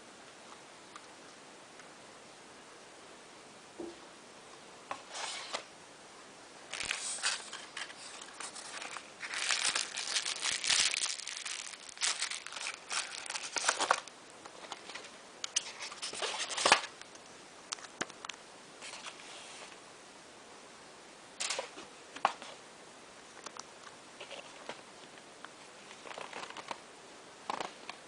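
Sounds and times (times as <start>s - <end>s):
crinkling and rustling handling noise: 6.7s - 19.8s, 24.2s - 26.8s.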